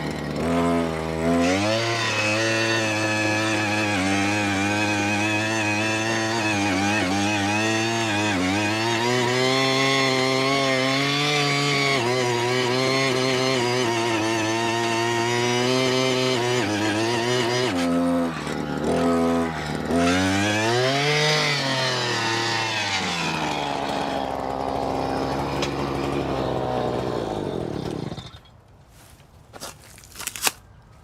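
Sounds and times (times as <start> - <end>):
small gasoline engine running: 0.0 - 28.5.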